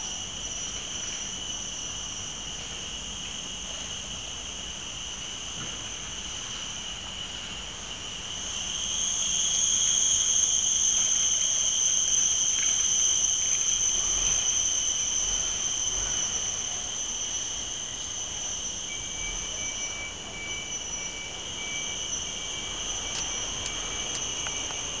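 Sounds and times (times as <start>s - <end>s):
cicadas droning: 0.0s - 25.0s
thin steady tone: 6.1s - 25.0s.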